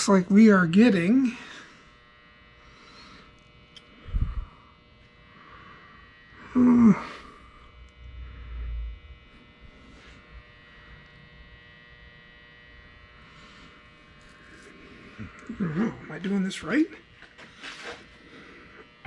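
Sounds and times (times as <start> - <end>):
electrical hum: 0.0 - 19.0
low rumble: 4.0 - 4.6, 7.8 - 9.7
short grunt: 6.5 - 7.3.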